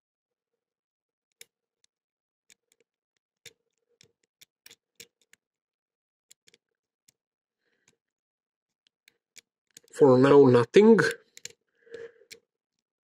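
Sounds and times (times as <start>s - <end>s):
lock pick clicking in padlock: 1.3s - 5.4s, 6.3s - 7.2s.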